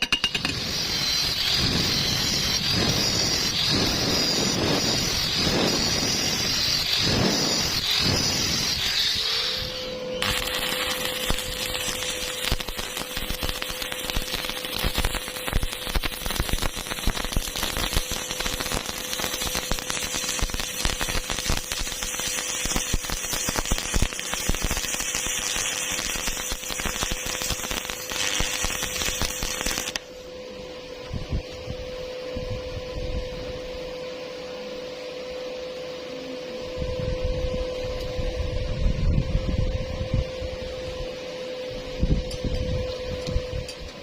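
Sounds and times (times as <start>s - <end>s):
welding arc crackling: 0.0s - 30.1s
steady hum: 0.0s - 44.0s.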